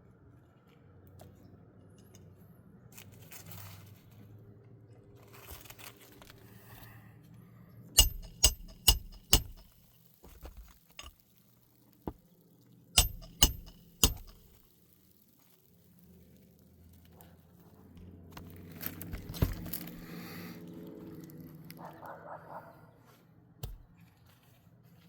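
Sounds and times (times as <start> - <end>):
hard objects clinking: 8.0 - 9.7, 13.0 - 14.6.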